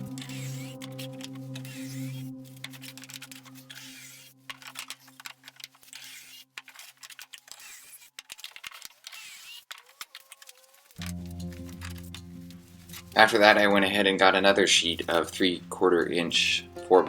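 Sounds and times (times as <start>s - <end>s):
soft background music: 0.0s - 5.7s, 11.0s - 17.0s.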